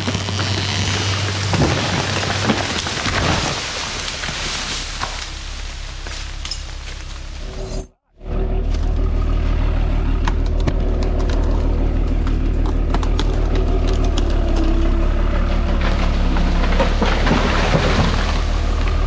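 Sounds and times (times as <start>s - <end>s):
diesel engine droning: 0.0s - 19.0s
sharp clicks and cracks: 10.2s - 14.9s.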